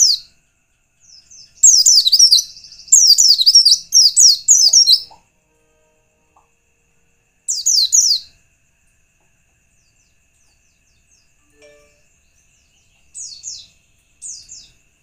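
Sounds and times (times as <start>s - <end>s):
bird singing high falling chirps: 1.0s - 5.2s, 7.5s - 8.3s, 10.9s - 14.8s.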